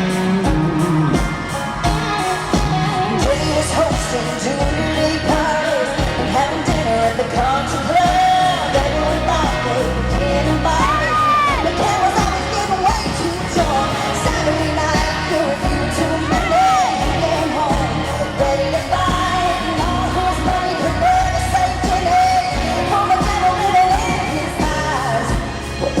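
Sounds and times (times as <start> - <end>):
band playing steady beat: 0.0 - 26.0
woman singing: 0.0 - 26.0.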